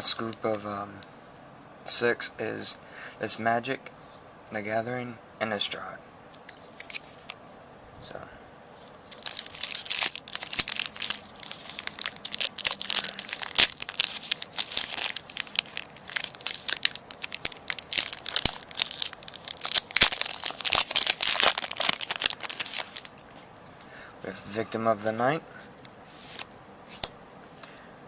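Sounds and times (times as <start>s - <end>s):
foil wrapper crinkling: 9.0s - 23.5s.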